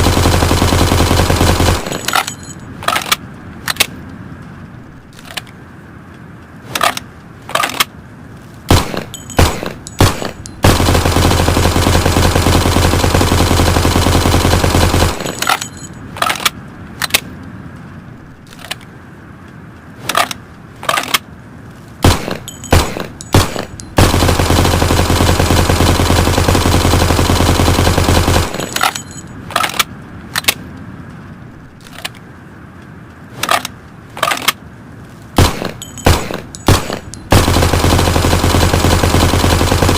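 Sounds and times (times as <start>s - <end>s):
submachine gun firing: 0.0s - 2.4s, 8.7s - 15.8s, 22.0s - 29.1s, 35.4s - 39.9s.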